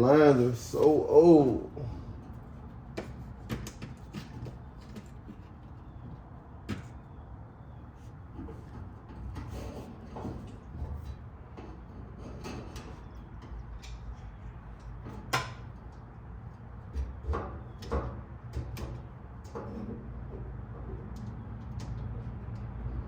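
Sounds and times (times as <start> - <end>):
steady low hum: 0.0 - 3.2.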